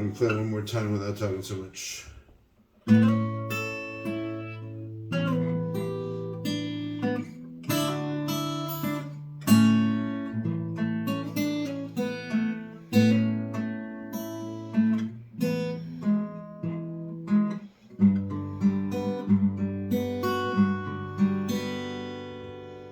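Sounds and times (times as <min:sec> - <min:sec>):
acoustic guitar picking: 0:00.0 - 0:01.9, 0:02.6 - 0:22.9.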